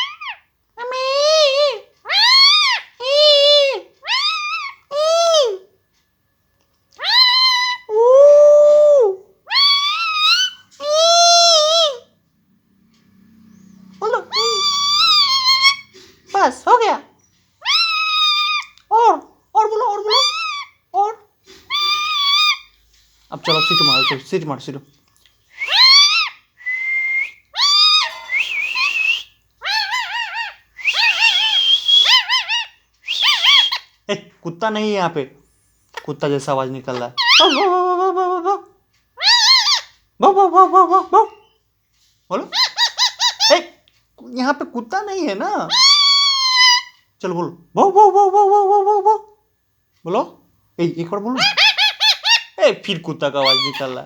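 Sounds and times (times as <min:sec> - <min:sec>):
parrot squawking: 0:00.0 - 0:05.6, 0:07.0 - 0:08.0, 0:09.4 - 0:12.1, 0:13.4 - 0:17.0, 0:17.6 - 0:18.8, 0:19.6 - 0:22.8, 0:23.4 - 0:24.4, 0:25.6 - 0:26.5, 0:27.5 - 0:33.9, 0:35.9 - 0:38.0, 0:39.2 - 0:40.0, 0:42.4 - 0:43.8, 0:45.4 - 0:47.0, 0:51.3 - 0:54.0.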